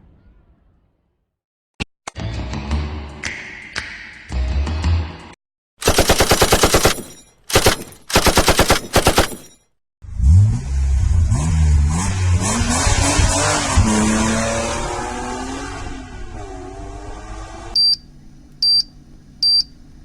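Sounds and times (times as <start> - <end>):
automatic gunfire bursts: 5.8 - 9.6
engine revving: 10.0 - 17.8.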